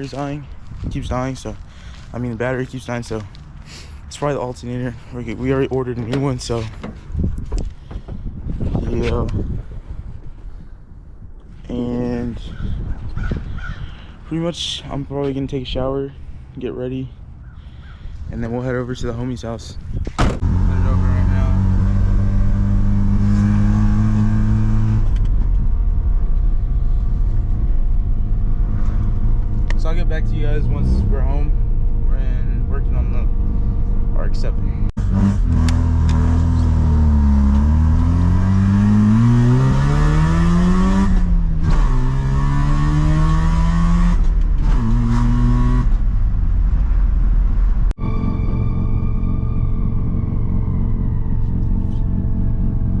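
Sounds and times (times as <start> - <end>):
road rumble: 0.0 - 53.0
car engine running under throttle: 20.4 - 53.0.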